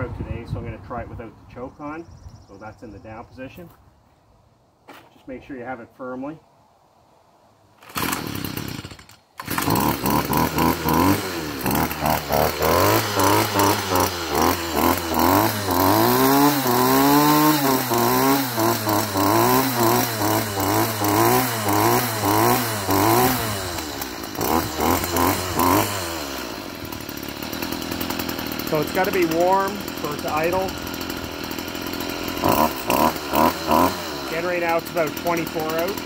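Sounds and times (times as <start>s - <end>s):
string trimmer engine revving: 7.8s - 36.0s.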